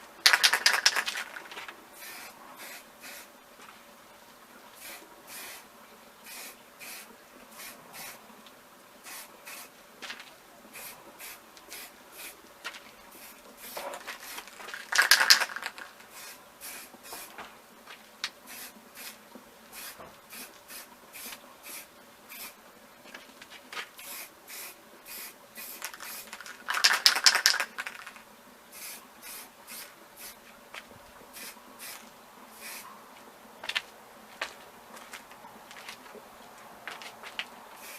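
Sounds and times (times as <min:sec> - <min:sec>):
spray paint can spraying: 0:00.2 - 0:03.3, 0:04.8 - 0:05.6, 0:06.2 - 0:08.2, 0:09.0 - 0:09.7, 0:10.7 - 0:12.4, 0:13.1 - 0:17.3, 0:18.5 - 0:22.6, 0:24.0 - 0:30.4, 0:31.3 - 0:32.8.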